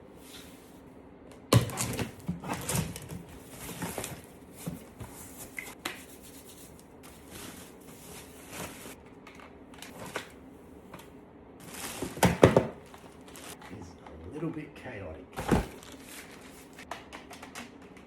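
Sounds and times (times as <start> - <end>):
cardboard box knocks and rustles: 11.9 - 12.8.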